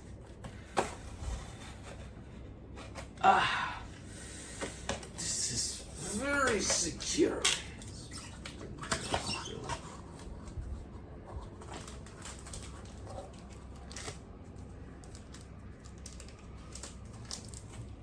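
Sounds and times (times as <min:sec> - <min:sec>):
gift wrapping paper rustling: 0:09.5 - 0:18.0.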